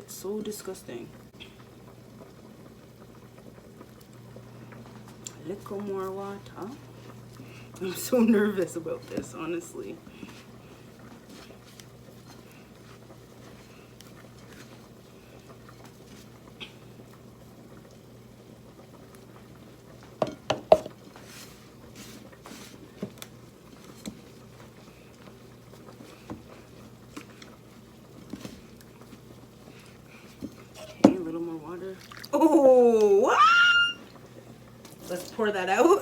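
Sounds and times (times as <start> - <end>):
dough being mixed in bowl: 5.0 - 17.3, 20.0 - 33.0, 34.8 - 36.0.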